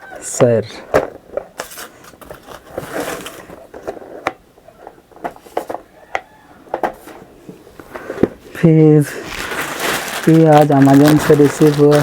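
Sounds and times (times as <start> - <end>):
packaging rustling: 1.1 - 4.2, 7.8 - 12.0.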